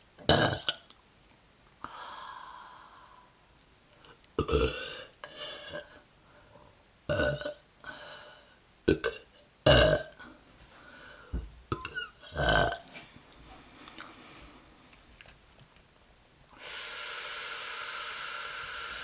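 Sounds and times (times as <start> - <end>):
woman burping loudly: 0.3 - 1.0, 4.4 - 5.0, 7.1 - 7.6, 8.9 - 10.2, 11.7 - 12.9
breaths: 1.8 - 3.4, 7.8 - 8.6, 10.2 - 11.5, 13.4 - 15.0, 16.5 - 19.0.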